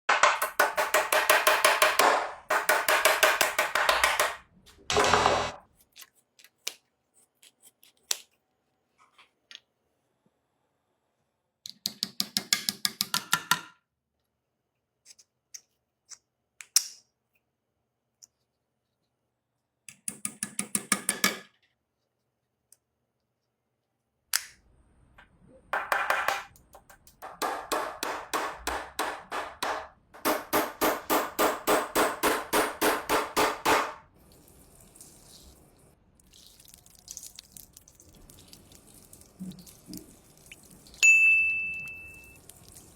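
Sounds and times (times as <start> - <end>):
hammer tapping nails: 0.1 - 5.5, 25.8 - 34.0.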